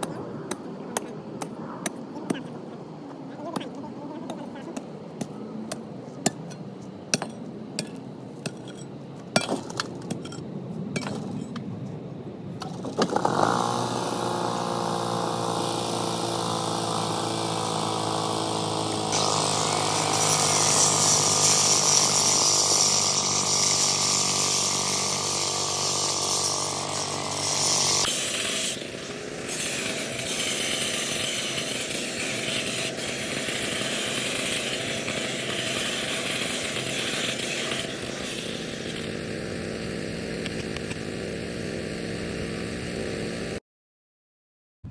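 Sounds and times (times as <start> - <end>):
small engine power tool running: 12.7 - 43.6.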